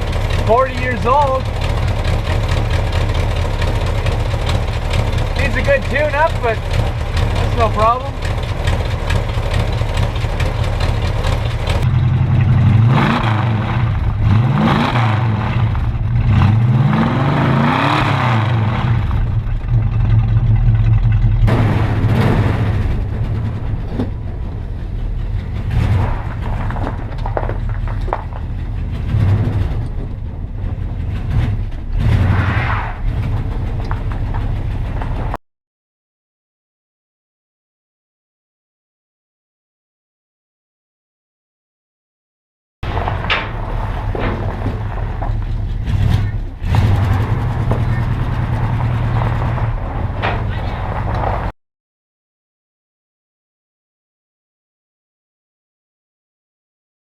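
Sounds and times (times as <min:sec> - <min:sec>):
car engine revving and idling: 0:00.0 - 0:35.4, 0:42.9 - 0:51.5
man talking: 0:00.4 - 0:01.5, 0:05.3 - 0:06.7, 0:07.4 - 0:08.2.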